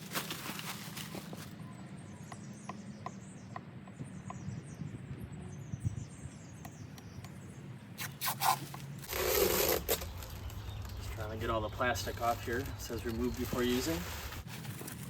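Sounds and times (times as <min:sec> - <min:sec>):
small bird chirping: 0:01.6 - 0:08.7, 0:09.8 - 0:13.9.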